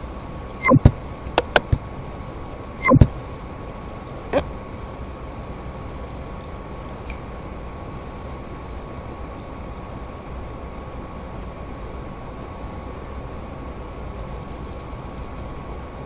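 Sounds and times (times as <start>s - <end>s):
faint high tone: 0.6s - 0.9s, 2.8s - 3.1s.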